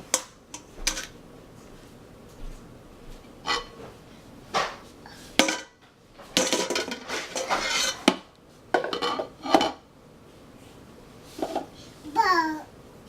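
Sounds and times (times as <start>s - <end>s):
pots and metal spoon clattering: 6.4s - 8.1s.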